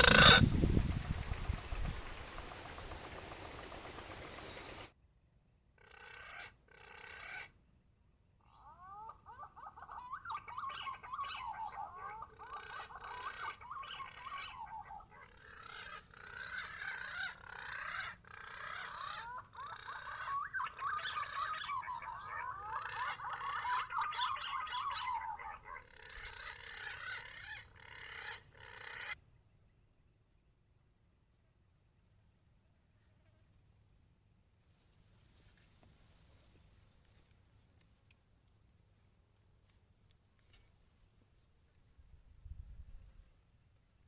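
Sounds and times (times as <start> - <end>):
high insect drone: 0.0 - 8.7.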